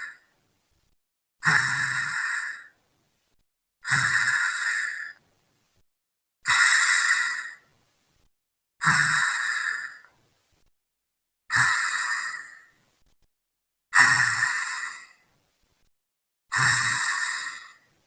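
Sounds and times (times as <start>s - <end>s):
loud snoring: 1.4s - 2.7s, 3.8s - 5.2s, 8.8s - 10.1s, 16.5s - 17.9s.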